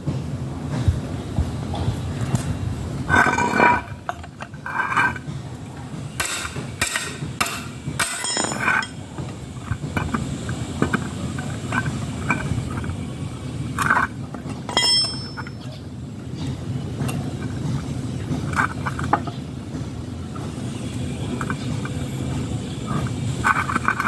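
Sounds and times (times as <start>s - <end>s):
tableware clinking: 6.2s - 9.0s, 14.7s - 15.7s.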